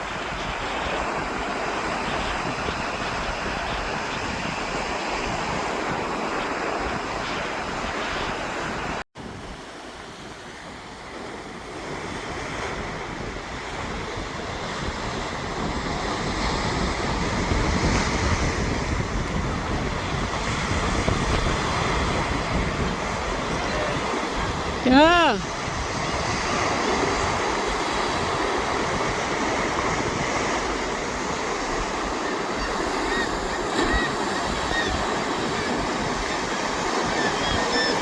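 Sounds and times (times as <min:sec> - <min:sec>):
wind buffeting the microphone: 0:00.0 - 0:24.8.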